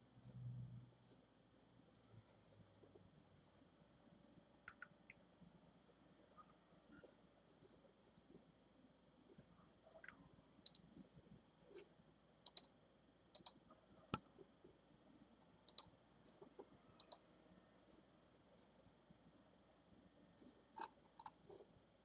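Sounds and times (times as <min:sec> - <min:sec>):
computer mouse clicks: 0:04.7 - 0:05.2, 0:10.0 - 0:10.9, 0:12.4 - 0:12.7, 0:13.3 - 0:14.4, 0:15.6 - 0:17.2, 0:20.8 - 0:21.6.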